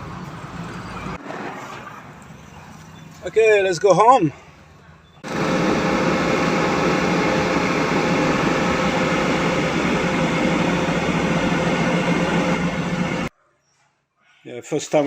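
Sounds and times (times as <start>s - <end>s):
car engine and road noise: 0.0s - 3.3s, 4.5s - 13.3s
low hum: 5.2s - 13.3s.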